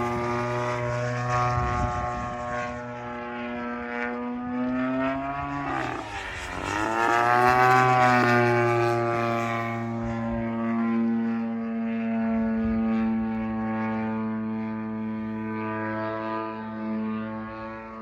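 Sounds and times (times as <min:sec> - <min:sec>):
wind on microphone: 0:00.0 - 0:04.2, 0:05.2 - 0:13.9
model airplane engine and propeller: 0:00.0 - 0:18.0.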